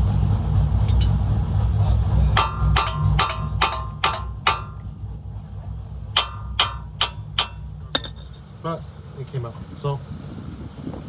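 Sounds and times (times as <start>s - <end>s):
hammer striking metal: 2.4s - 5.0s, 6.2s - 8.4s.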